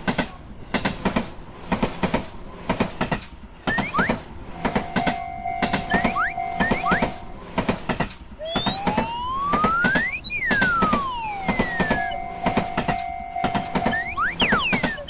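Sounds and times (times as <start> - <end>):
gliding siren tone: 3.7 - 7.4, 8.4 - 15.0
crossing bell ringing: 3.8 - 7.5, 10.8 - 15.0.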